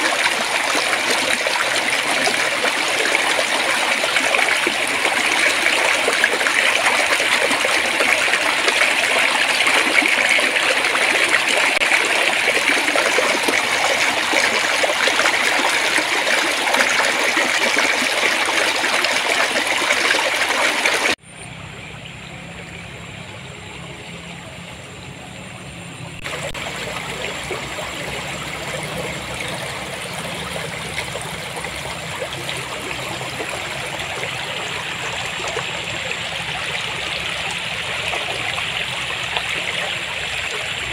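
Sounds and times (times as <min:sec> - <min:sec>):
stream babbling: 0:00.0 - 0:21.2, 0:26.2 - 0:40.9.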